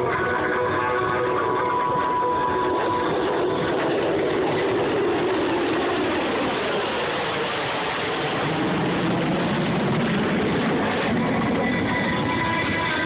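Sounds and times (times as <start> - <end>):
music over loudspeakers: 0.0 - 4.4, 11.1 - 13.0
jet engine roar: 0.0 - 13.0.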